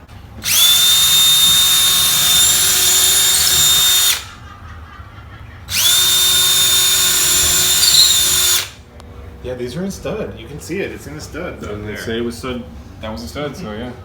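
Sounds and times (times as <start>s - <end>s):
electric drill boring into wood: 0.4s - 4.4s, 5.7s - 8.8s.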